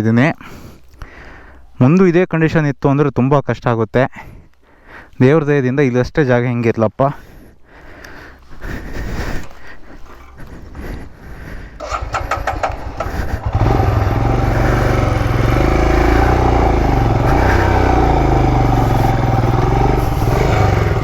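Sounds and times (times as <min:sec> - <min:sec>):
motorcycle engine cranking: 0:08.3 - 0:21.0
motorcycle engine revving: 0:09.3 - 0:21.0.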